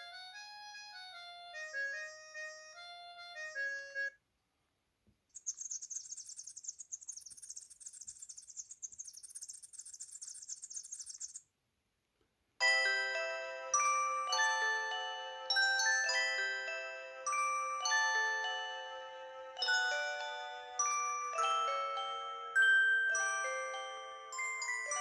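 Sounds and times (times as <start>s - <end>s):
bird-chirping ringtone: 0.0s - 4.2s, 5.4s - 11.4s, 12.6s - 25.0s
melodic ringtone: 0.0s - 4.2s, 12.6s - 25.0s.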